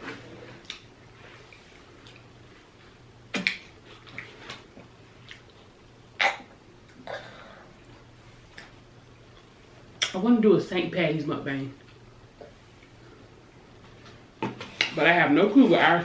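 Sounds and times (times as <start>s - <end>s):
mouth smacking while chewing: 3.3s - 7.0s.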